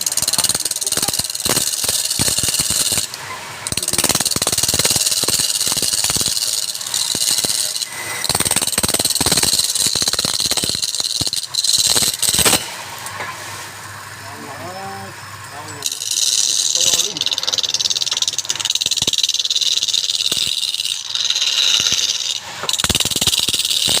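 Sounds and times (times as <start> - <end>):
wood lathe tool scraping: 0.0 - 13.3, 15.4 - 24.0.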